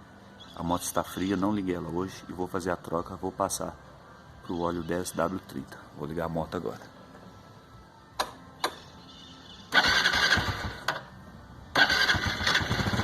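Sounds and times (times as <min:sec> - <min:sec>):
motorcycle engine starting: 0:09.7 - 0:11.1, 0:11.7 - 0:13.0.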